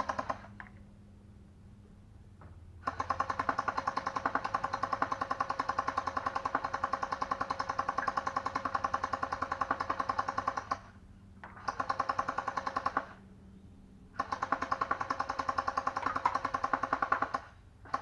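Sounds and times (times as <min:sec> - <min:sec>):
gel blaster firing full-auto: 0:02.8 - 0:10.9, 0:14.2 - 0:18.0.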